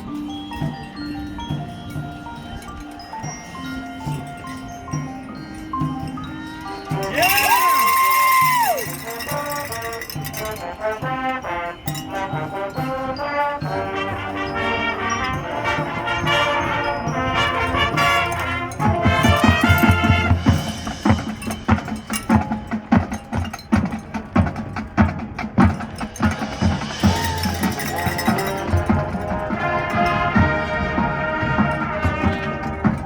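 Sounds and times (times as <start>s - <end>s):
marching band brass melody: 6.8s - 33.0s.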